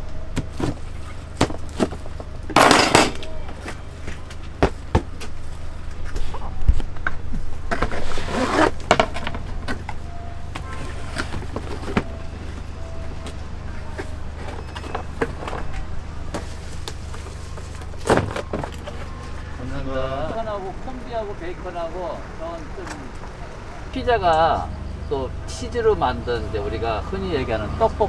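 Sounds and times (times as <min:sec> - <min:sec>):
scraping rustle: 0:00.4 - 0:06.6, 0:07.4 - 0:19.6
utensils and dishes clattering: 0:00.6 - 0:04.8.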